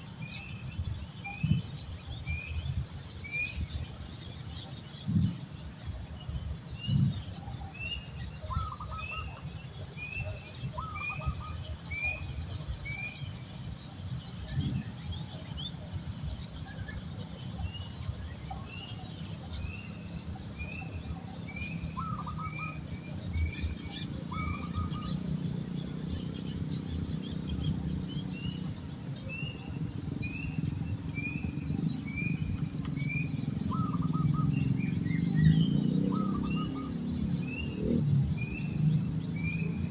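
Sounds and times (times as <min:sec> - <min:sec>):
high insect drone: 0:00.0 - 0:39.9
bird chirping: 0:00.2 - 0:39.9.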